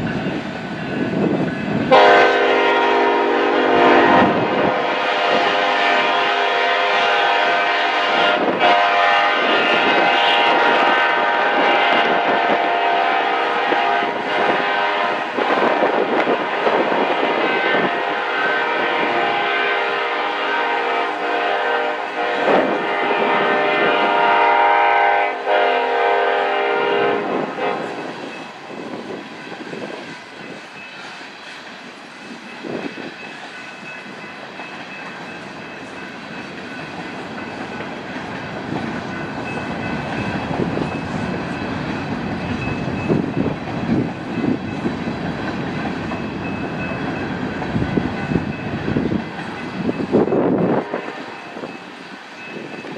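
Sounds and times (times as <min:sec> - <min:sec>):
locomotive air horn chord: 0:01.9 - 0:15.7, 0:16.4 - 0:28.0.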